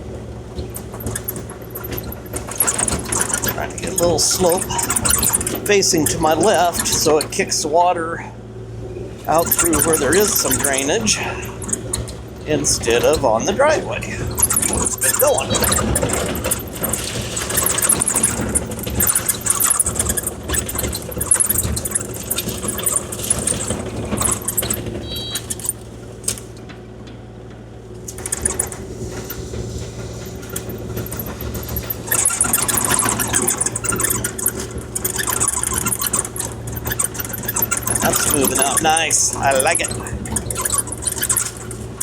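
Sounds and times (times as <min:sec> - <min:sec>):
metallic rattling and grinding: 0:00.0 - 0:07.8, 0:09.0 - 0:26.8, 0:27.9 - 0:42.0
diesel engine running: 0:00.0 - 0:42.0
bucket scraping gravel: 0:37.4 - 0:40.2.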